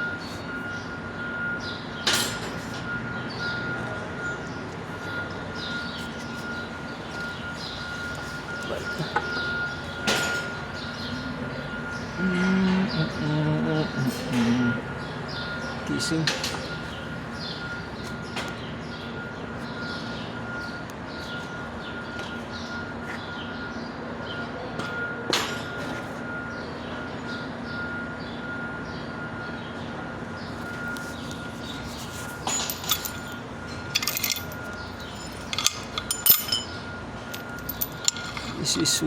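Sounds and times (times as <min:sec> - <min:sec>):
faint hum with high tone: 0:00.0 - 0:39.0
metal pieces clinking: 0:31.9 - 0:38.7.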